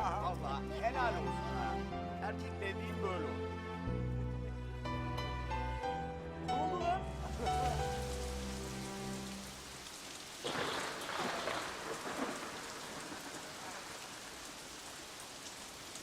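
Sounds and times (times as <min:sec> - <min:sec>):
soft music: 0:00.0 - 0:10.0
steady rain: 0:06.7 - 0:16.0.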